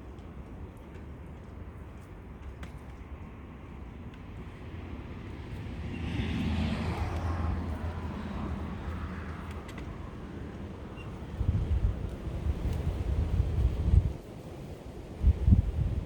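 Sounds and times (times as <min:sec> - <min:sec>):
wind buffeting microphone: 0:06.5 - 0:16.0.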